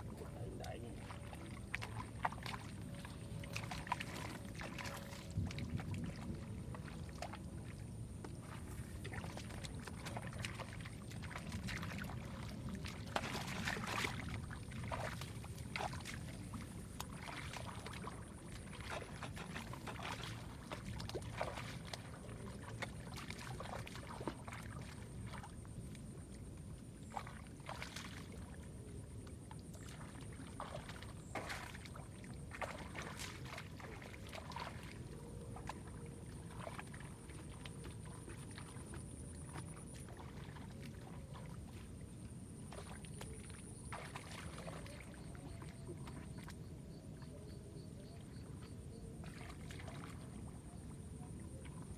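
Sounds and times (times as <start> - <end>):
hands splashing in muddy water: 8.4 - 25.6, 29.7 - 42.0, 42.6 - 46.6.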